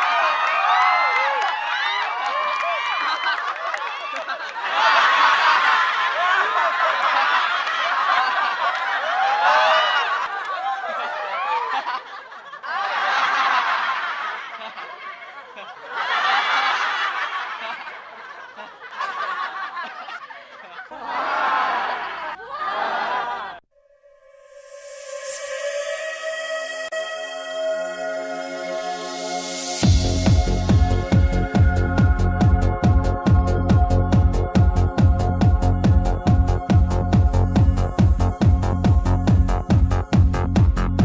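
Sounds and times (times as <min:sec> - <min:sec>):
audience laughing: 0:02.8 - 0:23.6.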